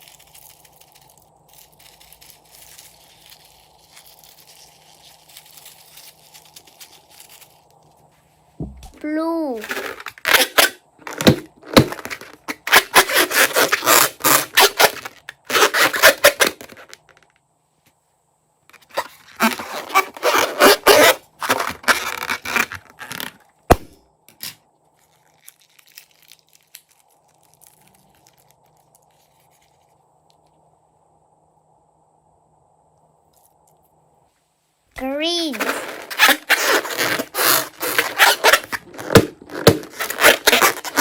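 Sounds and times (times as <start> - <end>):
crunchy slime crackling: 0.0 - 7.9, 24.9 - 30.0, 36.0 - 41.0.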